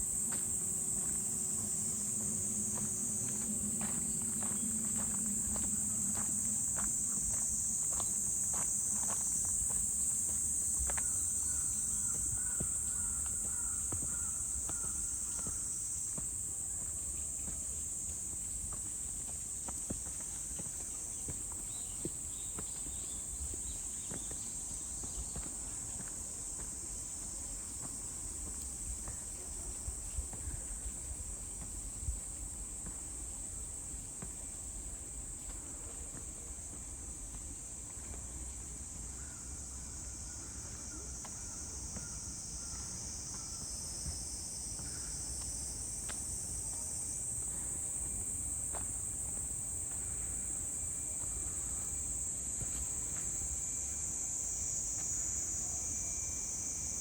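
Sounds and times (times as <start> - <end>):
low rumble: 0.0 - 8.4
insects chirring: 0.0 - 57.0.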